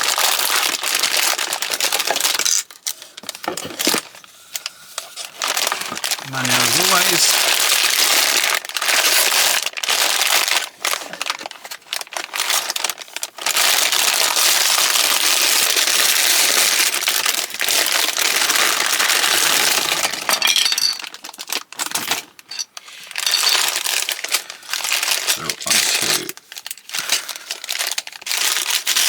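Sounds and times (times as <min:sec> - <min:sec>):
plastic bags rustling and crinkling: 0:00.0 - 0:25.8, 0:26.4 - 0:29.0
small bricks clinking: 0:20.2 - 0:21.2, 0:22.5 - 0:24.0.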